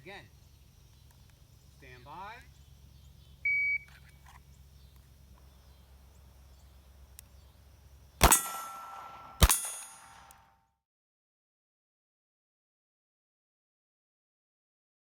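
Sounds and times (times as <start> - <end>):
pistol shots: 8.2 - 10.4
steel target clanging: 8.2 - 10.5.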